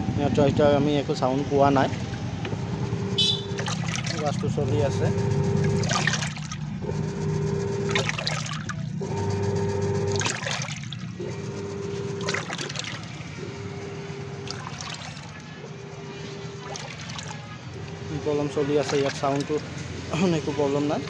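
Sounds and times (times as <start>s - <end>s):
washing machine motor humming: 1.5s - 21.0s
water sloshing: 1.7s - 9.1s, 10.0s - 21.0s.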